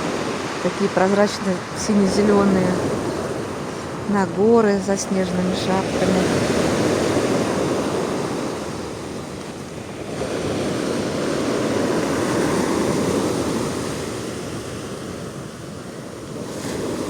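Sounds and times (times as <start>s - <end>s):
waves washing on a beach: 0.0s - 17.0s.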